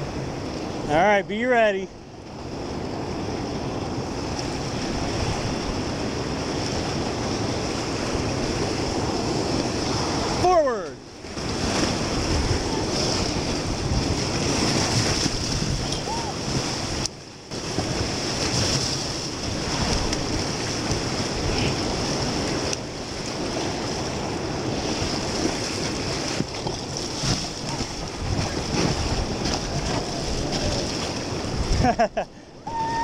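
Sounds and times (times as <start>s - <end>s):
wind buffeting microphone: 2.0s - 33.0s
whitewater rapids crashing: 6.7s - 31.9s, 32.5s - 33.0s.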